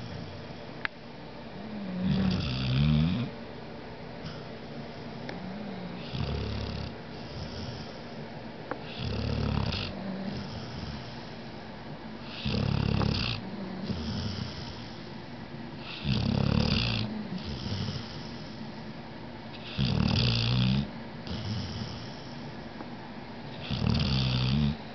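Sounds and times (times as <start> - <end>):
person snoring: 1.7 - 3.3, 4.3 - 8.2, 8.9 - 11.4, 12.3 - 15.1, 15.8 - 18.7, 23.6 - 24.8
soft breathing: 4.2 - 6.3, 6.9 - 9.0, 9.9 - 12.6, 13.4 - 16.1, 17.0 - 19.0, 21.2 - 22.9.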